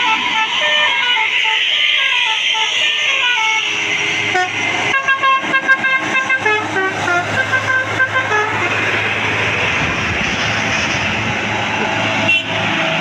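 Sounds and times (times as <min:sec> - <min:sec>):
musical bus horn playing a tune: 0:00.0 - 0:09.0, 0:12.2 - 0:12.8.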